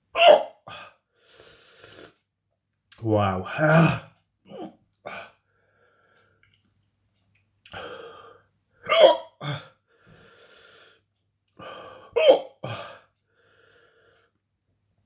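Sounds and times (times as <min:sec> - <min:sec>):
man hiccuping: 0:00.1 - 0:00.7, 0:03.5 - 0:05.3, 0:08.8 - 0:09.7, 0:12.2 - 0:12.9
man breathing: 0:00.7 - 0:02.2, 0:05.0 - 0:06.6, 0:07.6 - 0:08.6, 0:09.6 - 0:14.4.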